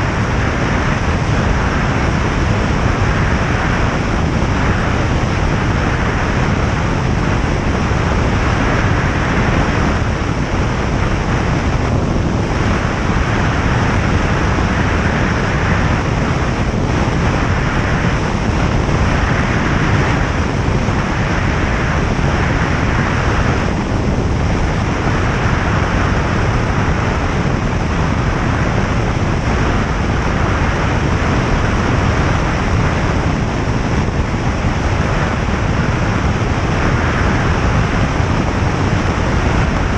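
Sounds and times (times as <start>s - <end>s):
airflow rushing: 0.0s - 39.9s
light aircraft engine and propeller: 0.0s - 39.9s.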